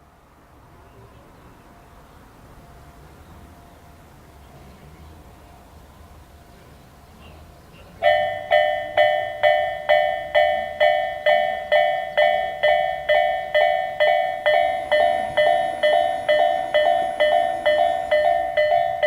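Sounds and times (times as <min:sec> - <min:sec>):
level crossing alarm bell: 0:08.0 - 0:19.0
second crossing sounder: 0:08.0 - 0:19.0.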